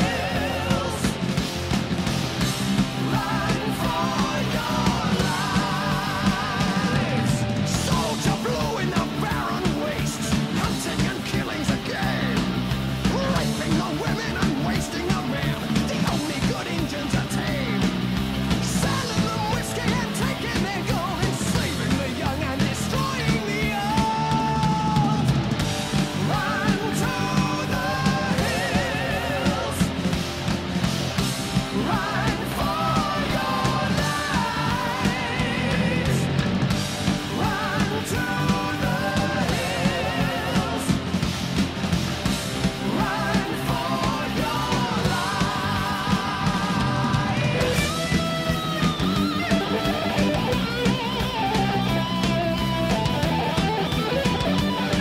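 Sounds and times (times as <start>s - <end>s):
person singing: 0.0s - 1.2s, 3.1s - 12.5s, 31.7s - 36.4s, 37.3s - 41.0s, 42.8s - 48.1s
drums: 0.0s - 55.0s
electric guitar: 0.0s - 55.0s
rock music with singing: 0.0s - 55.0s.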